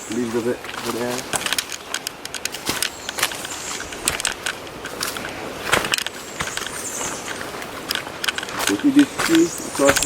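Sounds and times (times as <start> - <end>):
footsteps crunching on dry trail: 0.0 - 10.0.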